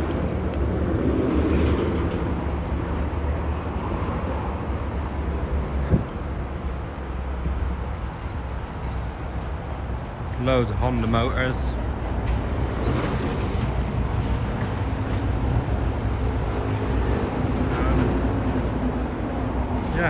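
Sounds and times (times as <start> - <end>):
vehicle engine rumbling: 5.4 - 20.0.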